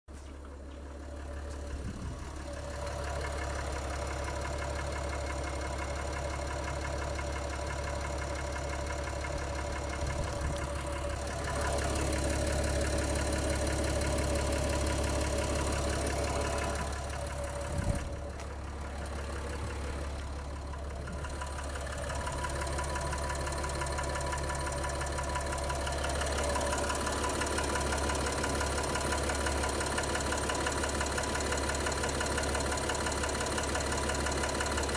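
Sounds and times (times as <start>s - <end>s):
diesel engine knocking: 0.1s - 34.9s.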